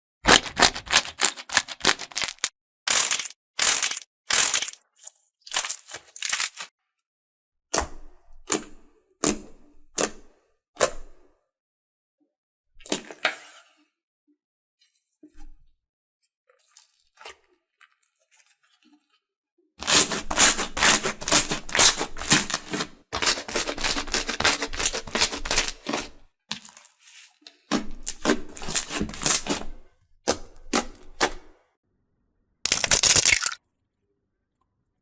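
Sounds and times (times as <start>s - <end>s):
slime crackling and popping: 0.3s - 4.8s, 32.7s - 33.6s.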